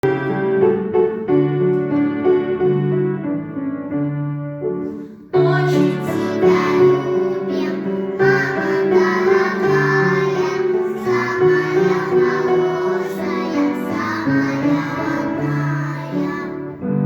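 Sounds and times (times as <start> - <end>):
children singing together: 5.4 - 16.8.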